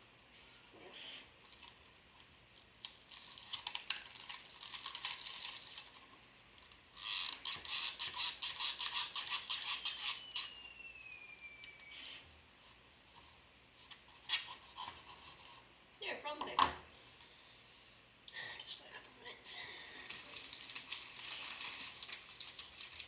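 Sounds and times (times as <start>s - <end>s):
faint falling whistle: 9.5s - 12.4s.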